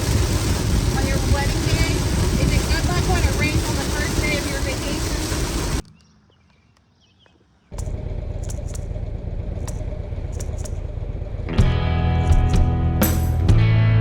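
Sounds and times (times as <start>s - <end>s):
motorcycle engine: 0.0s - 5.8s, 7.7s - 13.7s
wind rush: 0.0s - 5.8s.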